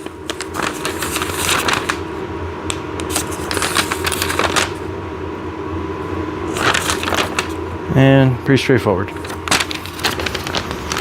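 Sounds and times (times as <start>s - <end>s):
paper pages rustling: 0.0s - 4.9s, 6.5s - 7.6s, 9.1s - 11.0s
steady low hum: 0.0s - 11.0s.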